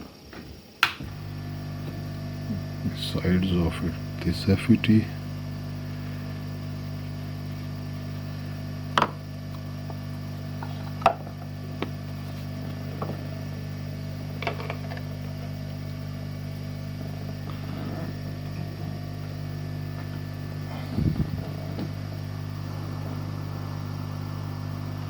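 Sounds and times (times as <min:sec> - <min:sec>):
fan motor humming: 0:00.8 - 0:25.0.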